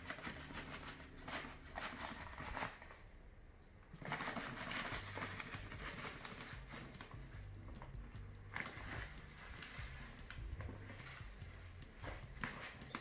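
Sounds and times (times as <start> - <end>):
cat litter poured into plastic box: 0.0 - 3.1, 3.9 - 13.0.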